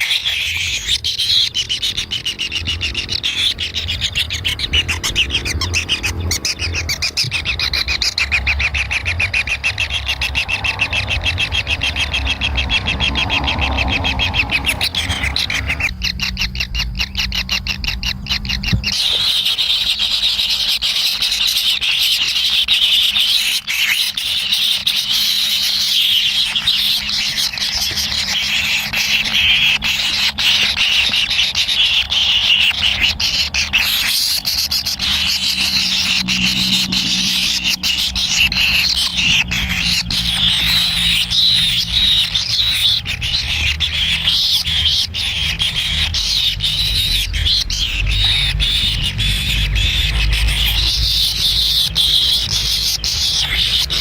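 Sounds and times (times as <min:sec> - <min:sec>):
chicks begging calls: 0:00.0 - 0:54.0
low rumble: 0:02.0 - 0:19.0.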